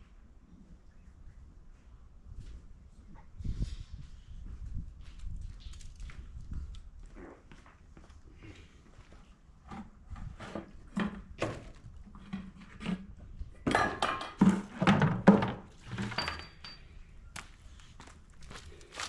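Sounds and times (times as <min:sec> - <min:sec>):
knocks and clanks on metal: 0:13.6 - 0:16.8.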